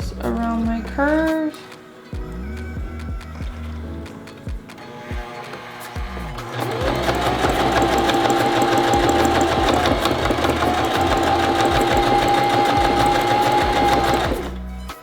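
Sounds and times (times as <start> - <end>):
sewing machine motor and needle: 5.6 - 14.6.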